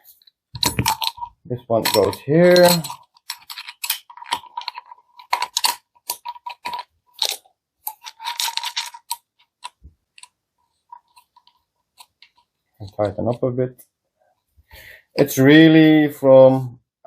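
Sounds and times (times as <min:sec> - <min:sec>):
small metal parts clicking: 0:00.6 - 0:12.5.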